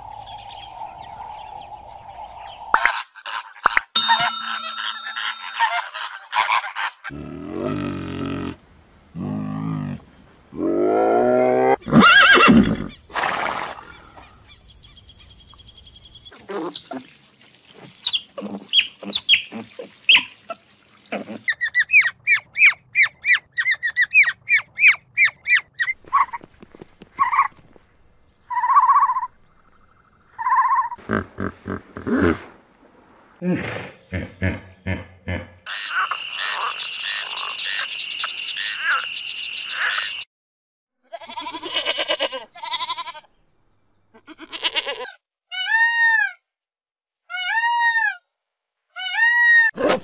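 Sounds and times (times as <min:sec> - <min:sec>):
animal chirps: 0:28.5 - 0:31.0, 0:35.7 - 0:40.2.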